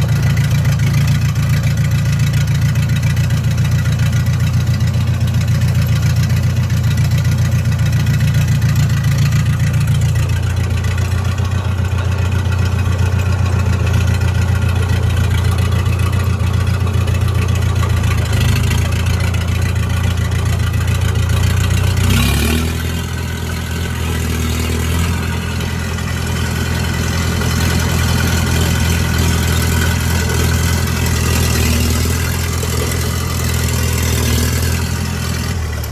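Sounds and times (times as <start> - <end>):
bulldozer diesel engine running: 0.0 - 35.9.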